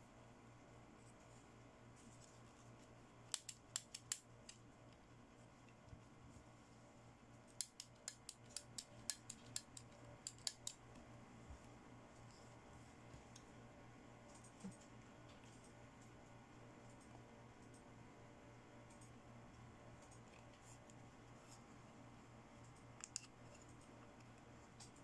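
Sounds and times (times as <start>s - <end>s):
scissors snipping: 3.3s - 4.2s, 7.6s - 10.8s.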